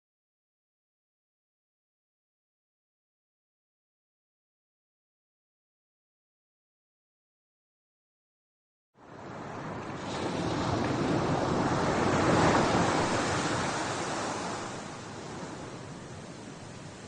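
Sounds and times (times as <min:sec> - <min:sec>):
sea waves washing ashore: 0:09.0 - 0:17.0.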